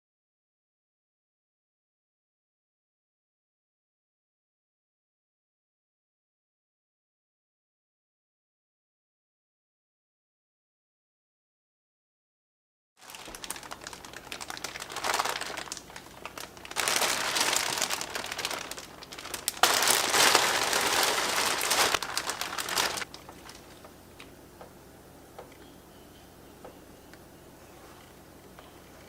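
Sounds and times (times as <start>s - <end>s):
crinkling and crackling: 13.0s - 24.4s.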